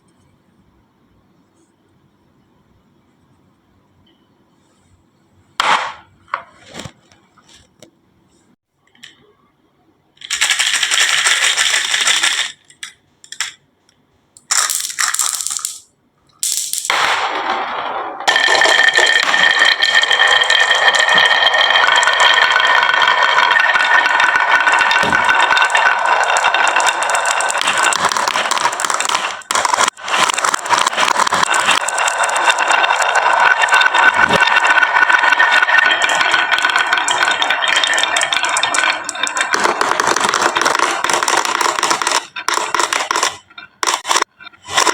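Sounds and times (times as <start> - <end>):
marbles rattling down a track: 10.2 - 13.6, 14.4 - 17.0, 18.2 - 44.9.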